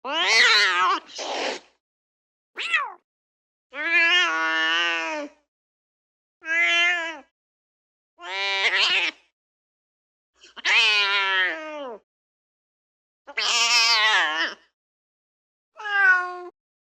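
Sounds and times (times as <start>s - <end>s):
cat meowing: 0.1s - 1.0s, 2.6s - 3.0s, 6.4s - 7.3s, 8.2s - 9.2s, 10.6s - 11.9s, 13.3s - 14.6s, 15.8s - 16.5s.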